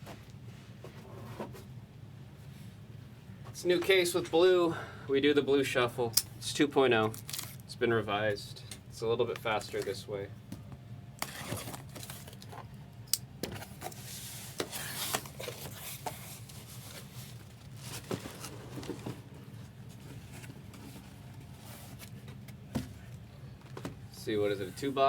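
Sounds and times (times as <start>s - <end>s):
steady low hum: 0.0s - 25.0s
card packs shuffled: 7.0s - 7.7s, 11.2s - 12.7s, 13.4s - 24.9s.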